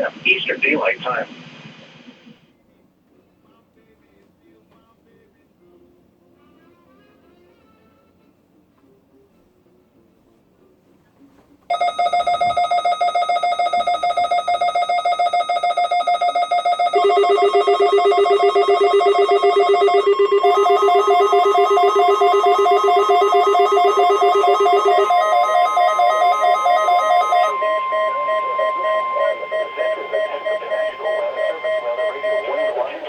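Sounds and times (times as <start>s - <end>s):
lower steady alarm tone: 11.7s - 33.0s
steady electronic beeping: 11.7s - 33.0s
warbling alarm tone: 11.7s - 33.0s.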